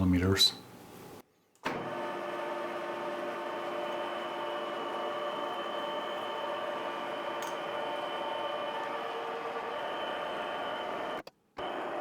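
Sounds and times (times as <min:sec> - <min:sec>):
metal lathe whining: 0:01.9 - 0:12.0.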